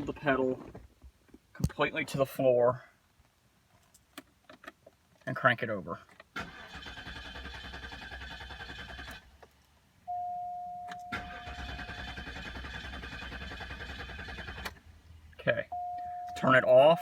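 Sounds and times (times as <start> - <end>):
car engine cranking: 6.4 - 9.4, 10.8 - 14.9
steady chime tone: 10.1 - 11.1, 15.8 - 17.0.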